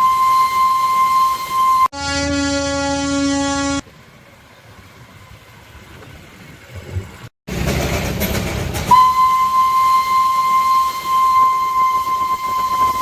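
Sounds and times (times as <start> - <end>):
high steady whistle: 0.0 - 2.4, 8.9 - 13.0
low train whistle: 0.0 - 3.8, 8.9 - 13.0
train rumbling: 3.8 - 13.0.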